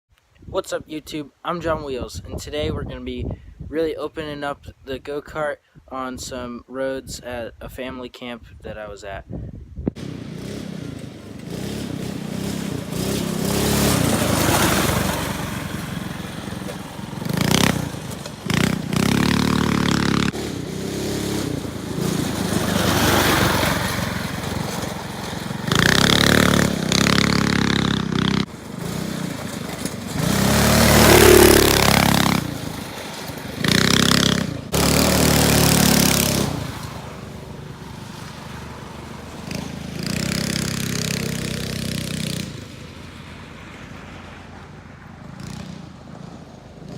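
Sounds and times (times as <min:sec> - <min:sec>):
go-kart engine revving: 0:09.9 - 0:46.9.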